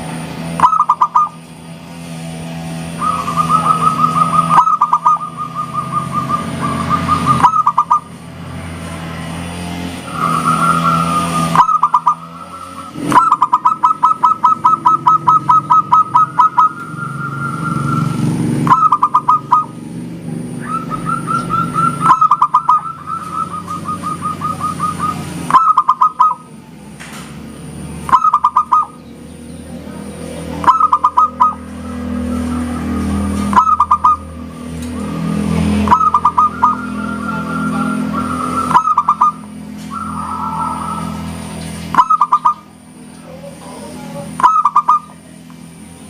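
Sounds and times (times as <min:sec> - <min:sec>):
dove cooing: 0:00.5 - 0:01.4, 0:02.9 - 0:08.2, 0:10.4 - 0:19.8, 0:20.4 - 0:26.7, 0:28.0 - 0:29.0, 0:29.9 - 0:45.4.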